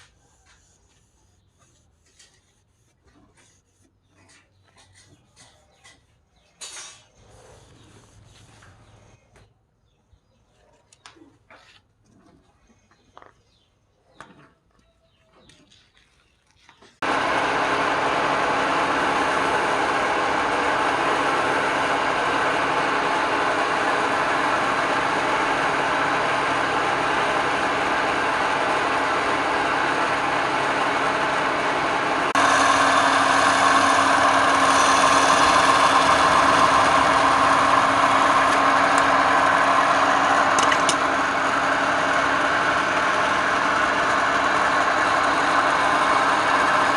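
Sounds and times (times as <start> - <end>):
wood lathe running: 17.0 - 46.9.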